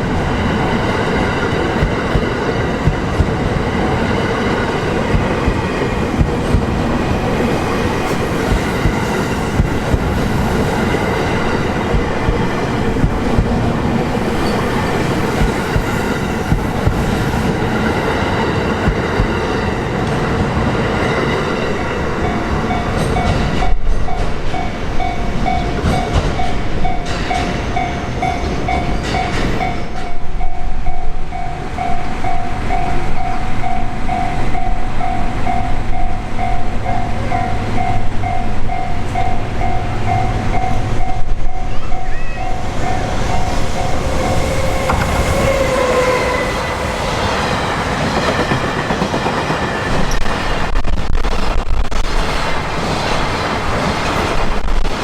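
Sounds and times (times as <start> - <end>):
crossing warning bell dinging: 0.0 - 19.9, 21.0 - 50.2
train wheels clacking over rail joints: 4.4 - 17.8, 25.5 - 30.2, 43.4 - 46.4, 47.1 - 50.7.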